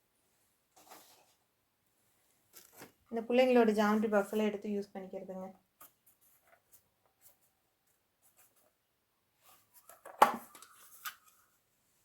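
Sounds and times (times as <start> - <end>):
faint clicks of small items: 2.2 - 3.1, 5.8 - 8.8, 9.4 - 11.5.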